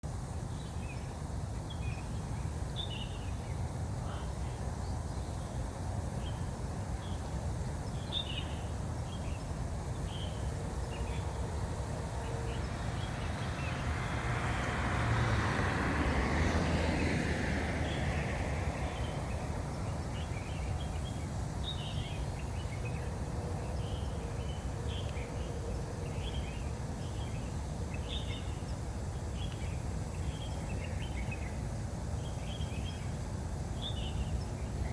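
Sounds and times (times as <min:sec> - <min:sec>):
small birds chirping: 0:00.4 - 0:14.6, 0:17.8 - 0:34.9
vehicle passing: 0:09.0 - 0:22.0.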